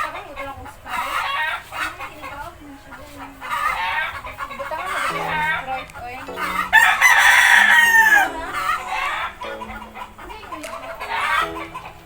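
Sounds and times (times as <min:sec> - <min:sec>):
chicken calls: 0:00.0 - 0:12.0
rooster crowing: 0:06.5 - 0:09.4.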